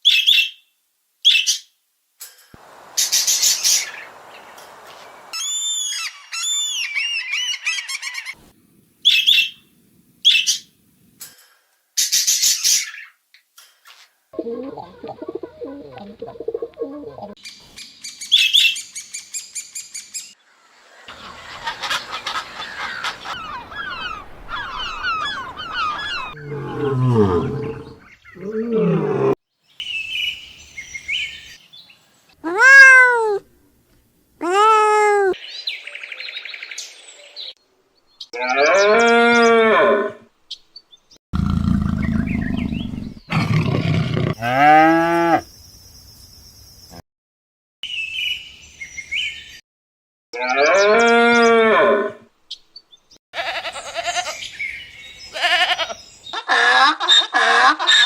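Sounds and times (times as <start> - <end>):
rising and falling animal calls: 5.4 - 8.4, 21.9 - 29.4, 32.4 - 33.4, 34.4 - 35.4, 41.4 - 45.4
birds chirping: 21.1 - 29.0, 29.8 - 33.4, 34.4 - 37.5, 40.9 - 44.3
low animal growls: 26.3 - 29.4, 41.4 - 45.4.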